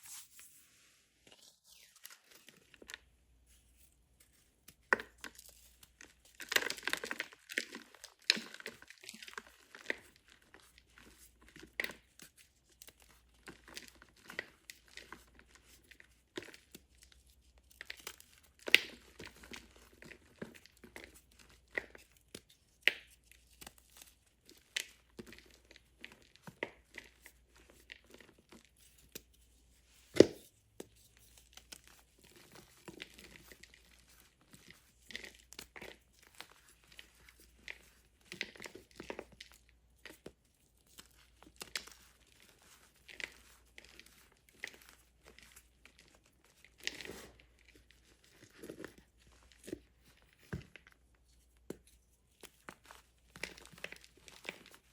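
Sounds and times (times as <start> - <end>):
chalk blocks crunching and crumbling: 12.8 - 54.9.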